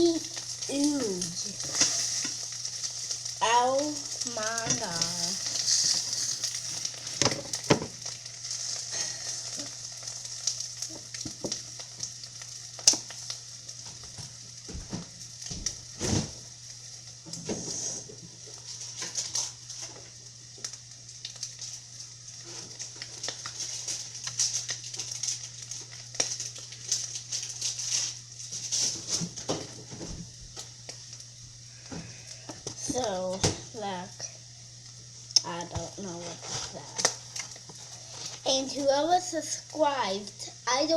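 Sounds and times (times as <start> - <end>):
eggs sizzling in a frying pan: 0.0 - 40.9
low steady hum: 0.0 - 40.9
utensil scraping a pan: 1.6 - 3.1, 4.6 - 7.3, 17.4 - 18.2.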